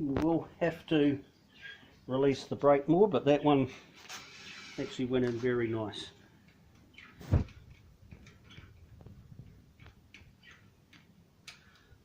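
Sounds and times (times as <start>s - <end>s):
faint clicks and rustles: 3.7s - 12.0s.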